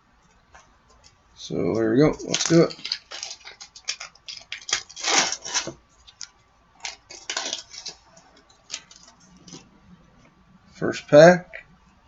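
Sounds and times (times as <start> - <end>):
foil wrappers crinkling: 1.7 - 9.7.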